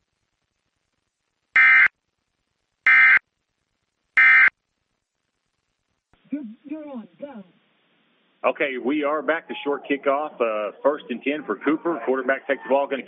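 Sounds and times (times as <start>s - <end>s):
short buzzing data tone bursts: 1.6s - 1.9s, 2.9s - 3.2s, 4.2s - 4.5s.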